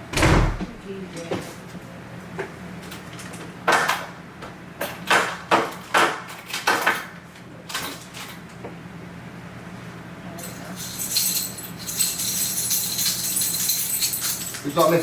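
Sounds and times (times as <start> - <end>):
household objects banging: 0.0 - 0.9.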